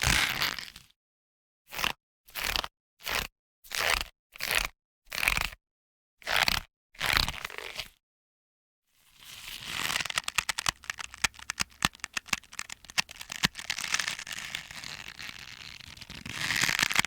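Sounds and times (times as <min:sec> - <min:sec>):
rubbery rope creaking: 0:09.3 - 0:17.0.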